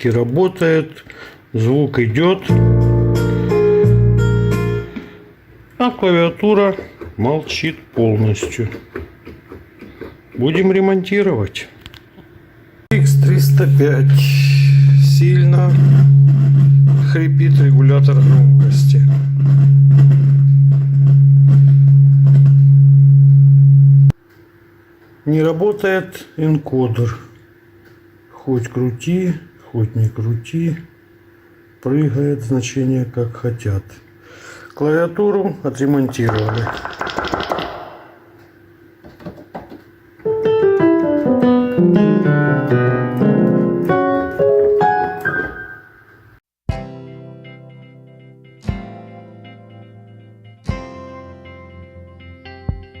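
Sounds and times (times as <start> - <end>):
steady low keyboard note: 2.5 - 5.3, 12.9 - 24.1
scratchy potentiometer crackles: 12.9 - 24.1.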